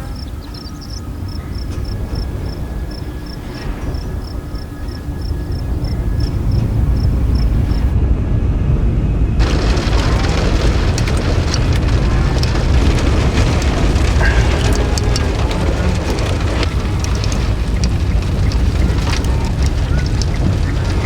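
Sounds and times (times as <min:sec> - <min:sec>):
steady low rumble: 0:00.0 - 0:21.0
heavy rain on a vehicle: 0:05.2 - 0:07.9, 0:09.4 - 0:21.0.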